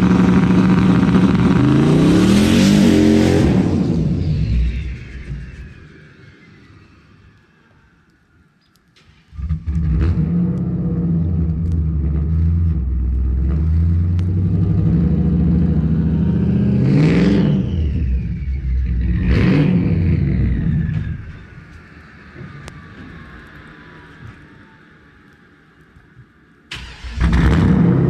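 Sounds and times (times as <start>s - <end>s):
engine revving at limiter: 0.0s - 5.0s, 9.4s - 21.2s, 26.8s - 28.0s.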